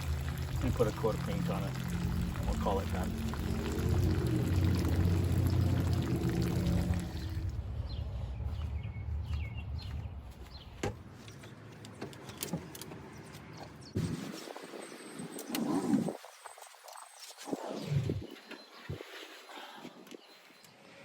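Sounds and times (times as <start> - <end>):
steady motor hum: 0.0 - 7.7.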